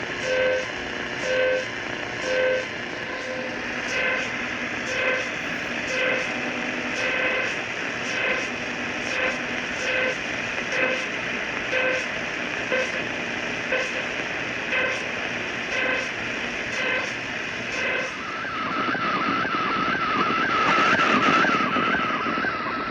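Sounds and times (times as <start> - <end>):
radio static hiss: 0.0 - 19.6
warbling radio tone: 2.2 - 11.1, 15.7 - 22.9.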